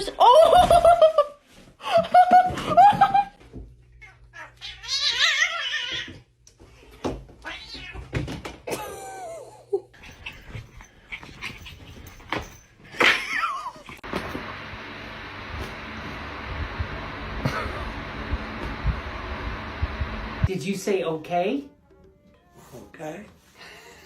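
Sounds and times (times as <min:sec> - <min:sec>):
cats meowing and yowling: 0:04.0 - 0:06.2, 0:07.4 - 0:08.1.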